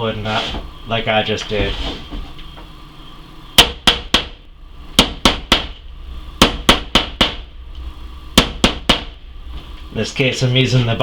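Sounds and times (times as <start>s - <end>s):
hammer striking nail: 3.6s - 4.4s, 5.0s - 5.8s, 6.4s - 7.5s, 8.4s - 9.2s.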